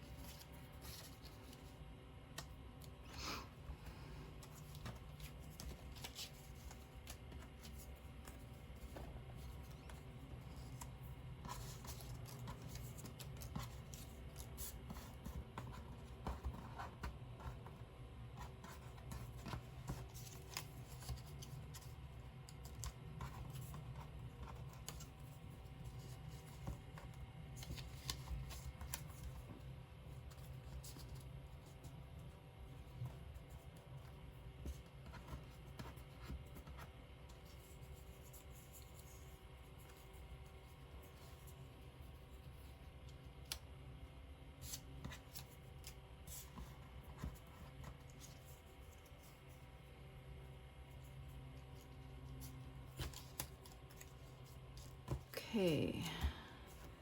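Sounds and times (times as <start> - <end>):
paper rustling and scraping: 4.4 - 17.6.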